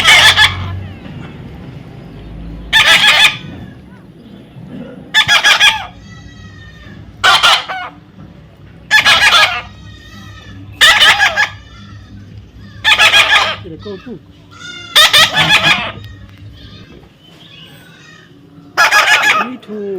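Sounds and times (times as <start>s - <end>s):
parrot squawking: 0.0s - 0.8s, 2.7s - 3.8s, 5.1s - 8.0s, 8.9s - 19.7s.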